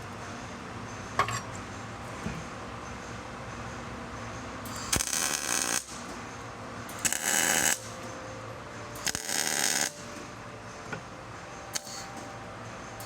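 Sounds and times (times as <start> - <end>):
low machine hum: 0.0 - 13.0
welder arc crackling: 4.7 - 6.2, 6.9 - 8.0, 9.0 - 10.3, 11.7 - 12.2.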